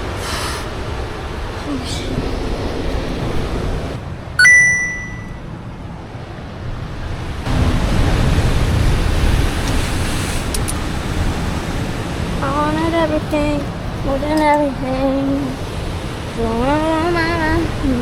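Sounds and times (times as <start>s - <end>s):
wind: 0.0s - 18.0s
sharp metallic ding: 4.4s - 5.4s.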